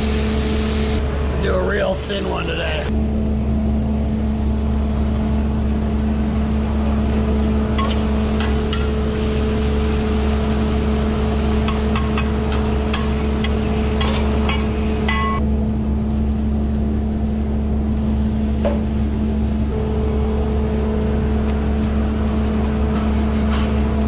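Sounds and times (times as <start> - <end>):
kitchen equipment humming: 0.0 - 24.0
utensils clicking and clattering: 11.6 - 15.4.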